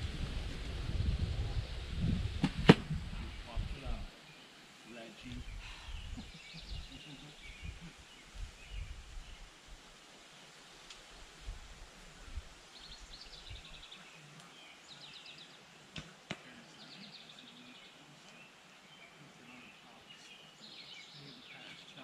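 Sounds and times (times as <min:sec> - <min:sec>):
arrow striking foam target: 0:02.4 - 0:03.0
bow string snapping: 0:02.4 - 0:03.0.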